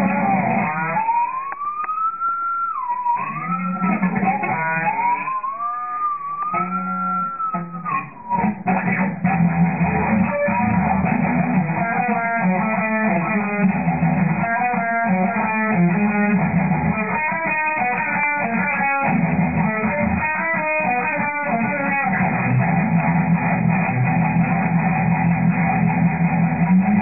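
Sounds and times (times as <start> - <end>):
electric guitar: 0.0 - 27.0
bass line: 15.1 - 17.4, 18.5 - 27.0.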